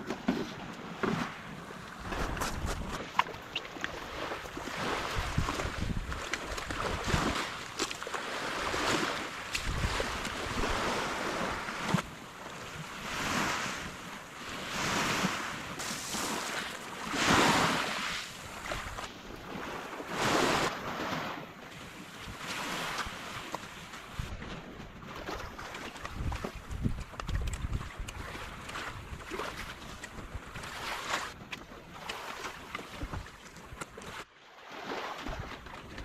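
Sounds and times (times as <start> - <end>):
water washing in swells: 1.2 - 36.0
wind buffeting microphone: 5.0 - 7.4, 26.0 - 30.7.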